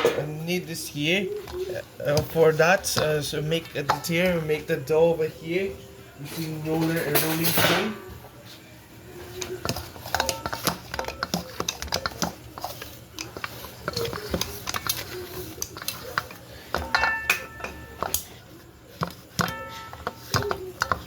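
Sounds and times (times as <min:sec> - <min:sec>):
utensils and dishes knocking: 0:09.6 - 0:18.3, 0:18.9 - 0:21.0.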